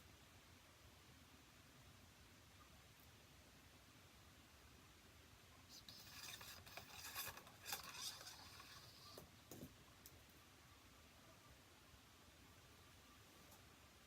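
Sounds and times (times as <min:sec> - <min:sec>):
rustling and scraping: 0:05.7 - 0:09.8.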